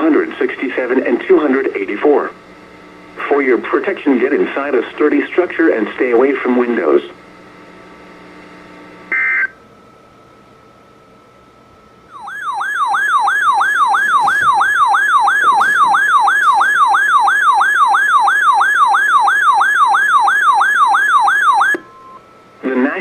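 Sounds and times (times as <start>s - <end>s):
falling electronic alert tone: 12.1s - 22.2s
short steady beep: 21.8s - 22.2s.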